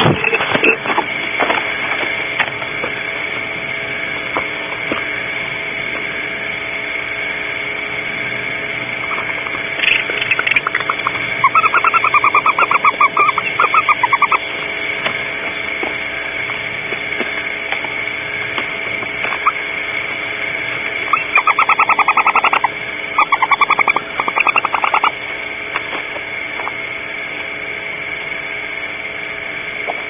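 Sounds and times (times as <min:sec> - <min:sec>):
electronic hum: 0:00.0 - 0:30.0
owl trilling: 0:08.8 - 0:14.8, 0:19.1 - 0:25.8, 0:26.5 - 0:27.0.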